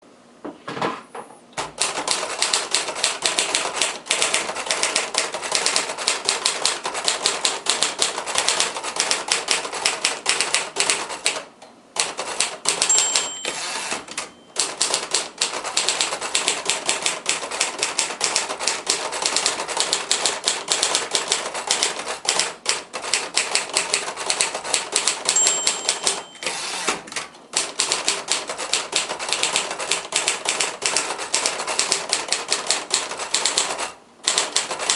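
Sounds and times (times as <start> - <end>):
typewriter typing: 1.6 - 34.9
typewriter bell ring: 12.7 - 16.1, 25.0 - 26.9.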